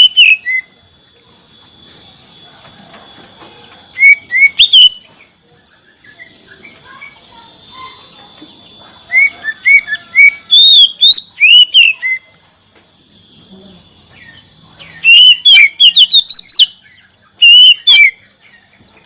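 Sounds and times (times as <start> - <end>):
bird singing whistled notes: 0.0 - 0.8, 3.6 - 12.4, 13.4 - 18.8
faint high-pitched tones: 0.0 - 19.0.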